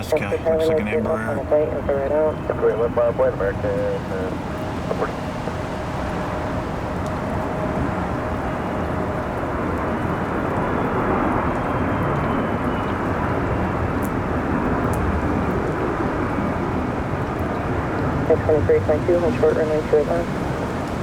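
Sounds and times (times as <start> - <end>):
high engine whine: 0.0 - 13.2
gusting wind: 0.0 - 21.0
heavy rain: 0.0 - 21.0
jet engines roaring: 0.0 - 21.0.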